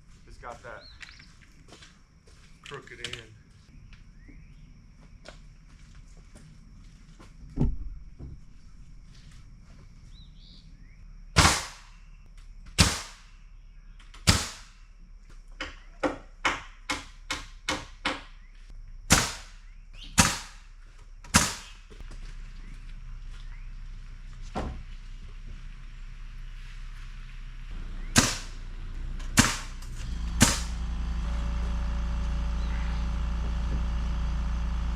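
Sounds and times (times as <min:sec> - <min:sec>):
nails driven into wood: 0:11.4 - 0:11.9, 0:12.7 - 0:13.3, 0:14.1 - 0:14.8, 0:15.6 - 0:18.4, 0:19.1 - 0:19.6, 0:20.2 - 0:20.6, 0:21.2 - 0:21.9, 0:28.2 - 0:28.6, 0:29.4 - 0:29.8, 0:30.4 - 0:30.7.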